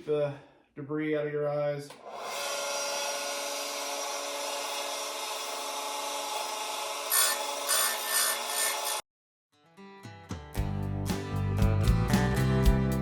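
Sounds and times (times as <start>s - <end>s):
electric chain grinder whining: 2.0s - 9.0s
grinding wheel rasping on saw chain: 3.9s - 9.0s.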